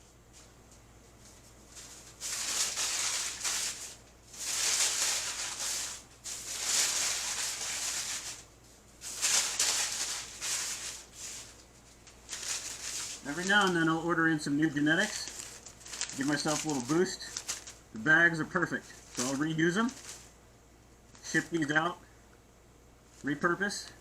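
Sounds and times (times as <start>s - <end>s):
dry rustling: 0.0s - 21.8s.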